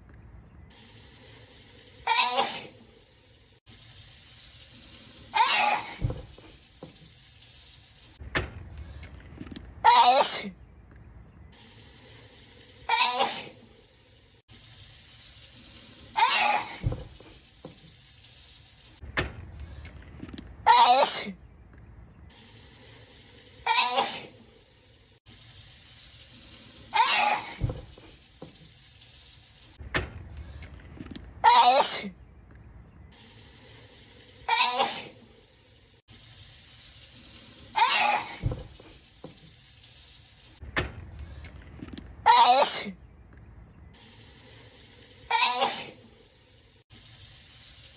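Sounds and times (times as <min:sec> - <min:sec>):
person sneezing: 0:02.1 - 0:02.8, 0:12.9 - 0:13.6, 0:23.7 - 0:24.4, 0:34.5 - 0:35.2, 0:45.3 - 0:46.0.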